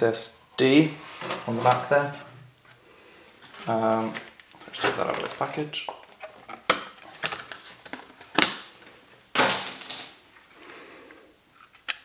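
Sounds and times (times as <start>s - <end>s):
plastic packaging clicks and crinkles: 3.5s - 10.2s.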